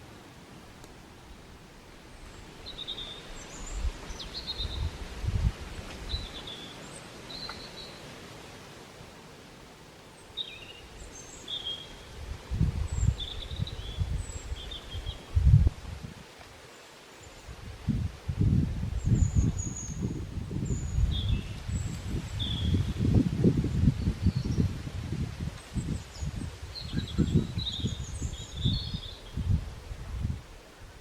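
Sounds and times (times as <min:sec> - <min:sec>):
small birds chirping: 0:02.1 - 0:05.0, 0:06.0 - 0:08.0, 0:10.1 - 0:12.2, 0:12.8 - 0:15.4, 0:19.0 - 0:23.1, 0:25.6 - 0:29.6.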